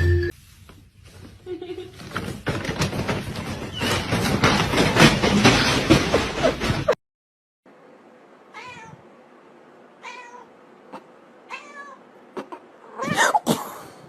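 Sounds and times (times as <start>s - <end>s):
cat meowing: 8.5s - 9.0s, 10.0s - 10.5s, 11.5s - 12.0s.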